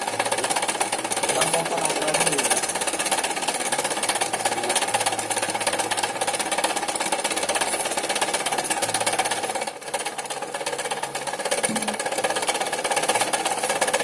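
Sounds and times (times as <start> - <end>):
slicing machine motor hum: 0.0 - 14.0.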